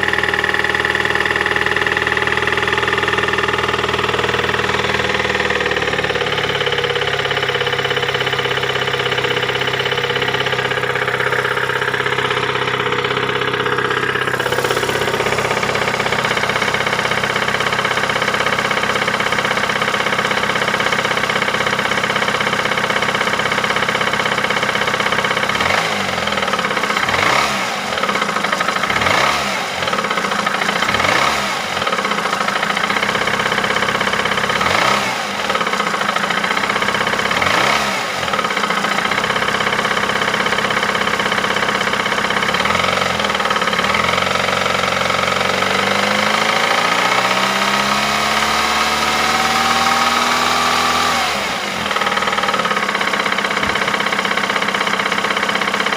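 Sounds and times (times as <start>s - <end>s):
car engine idling with knock: 0.0s - 55.9s
engine revving: 0.0s - 55.9s.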